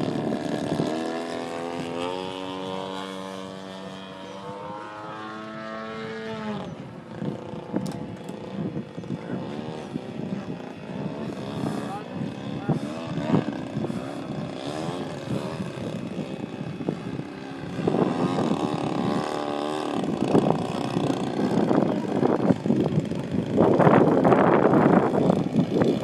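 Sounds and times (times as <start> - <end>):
model airplane motor and propeller: 0.0 - 26.0.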